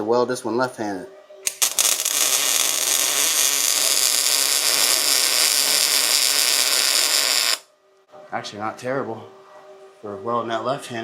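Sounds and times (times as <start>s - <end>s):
welder arc crackling and hissing: 1.5s - 7.7s.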